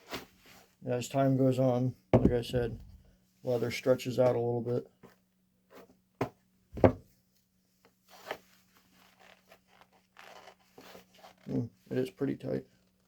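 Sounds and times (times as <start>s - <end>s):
knife knocking in sheath: 2.2s - 2.8s
blade scraping leather: 9.0s - 11.6s.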